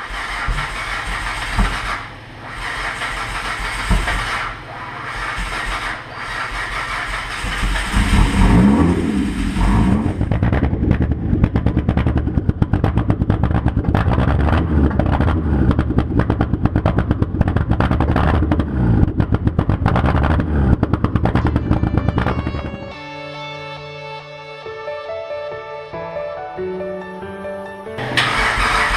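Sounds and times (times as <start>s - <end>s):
car engine revving unevenly: 0.0s - 21.7s.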